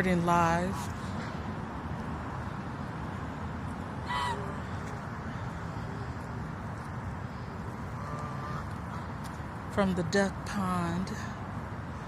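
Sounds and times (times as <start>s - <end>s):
outdoor background noise: 0.0s - 12.0s
waterfowl call: 4.0s - 4.6s.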